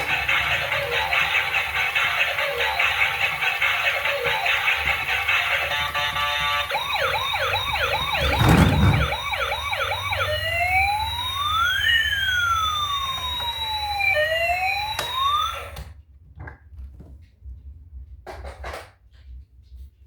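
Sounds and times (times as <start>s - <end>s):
toy electronic siren: 0.0s - 15.9s
thump: 8.2s - 9.2s.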